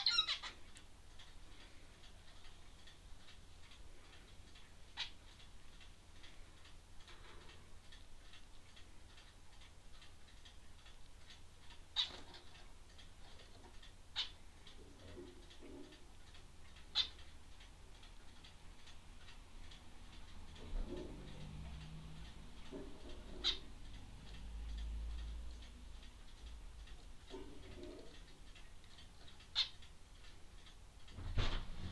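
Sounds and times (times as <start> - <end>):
bird chip calls: 0.0 - 0.6.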